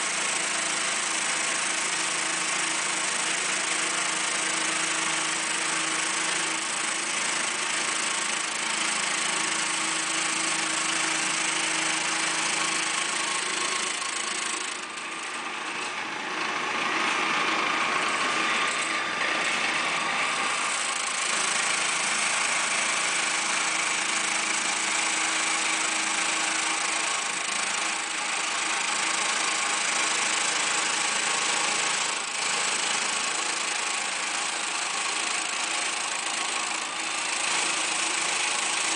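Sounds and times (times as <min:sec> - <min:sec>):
concrete grinder humming: 0:00.0 - 0:38.9.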